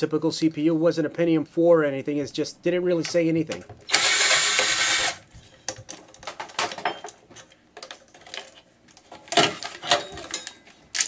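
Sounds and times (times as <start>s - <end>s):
loud burst of noise: 3.9s - 5.2s
computer parts clattering: 4.6s - 10.7s.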